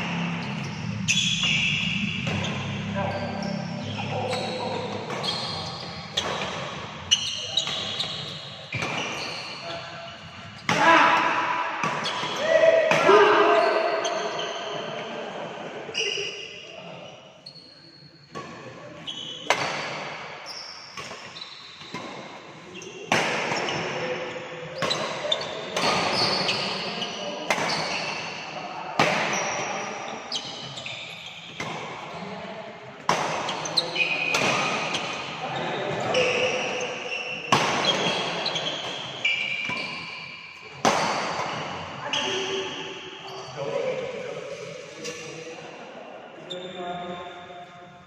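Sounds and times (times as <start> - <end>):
racket hitting shuttlecock: 0.0 - 9.5, 10.5 - 13.7, 19.4 - 20.4, 21.0 - 22.4, 23.1 - 24.0, 24.8 - 28.2, 29.0 - 29.7, 33.0 - 35.3, 37.5 - 41.9
shoes squeaking on court floor: 0.0 - 15.0, 15.9 - 16.7, 17.4 - 28.4, 29.0 - 32.4, 33.1 - 43.8, 46.4 - 48.0
racket striking shuttlecock: 6.1 - 6.8, 10.7 - 13.1, 34.3 - 35.2, 40.7 - 41.8.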